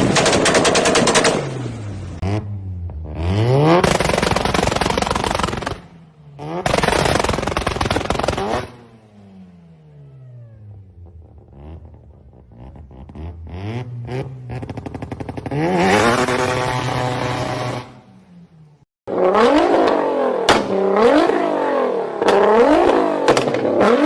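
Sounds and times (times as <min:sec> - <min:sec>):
car engine revving: 0:00.0 - 0:24.0
exhaust crackling and popping: 0:03.6 - 0:08.8.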